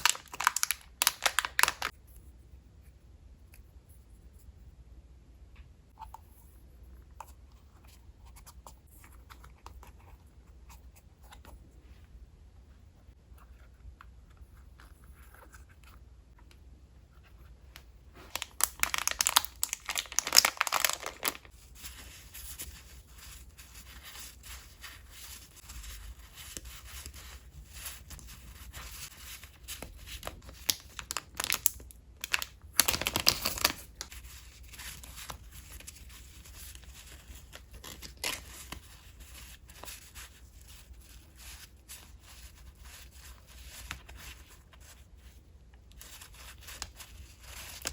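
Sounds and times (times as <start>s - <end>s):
paper rustling: 18.2s - 30.8s, 32.2s - 45.0s
paper tearing and crinkling: 18.3s - 21.5s.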